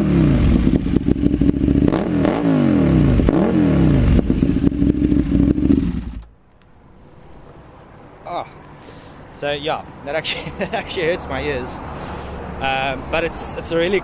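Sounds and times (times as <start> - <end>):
motorcycle engine revving: 0.0 - 6.3.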